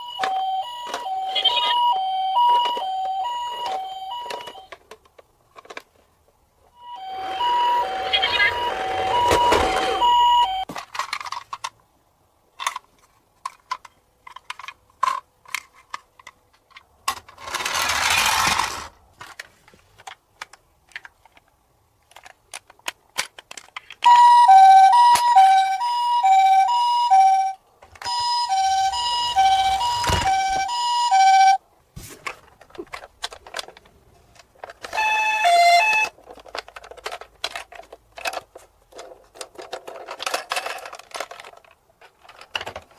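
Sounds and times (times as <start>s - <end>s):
toy siren hi-lo: 0.0s - 4.7s, 6.8s - 10.6s, 24.1s - 31.6s
small plastic clicks and knocks: 19.2s - 24.1s, 36.0s - 42.9s.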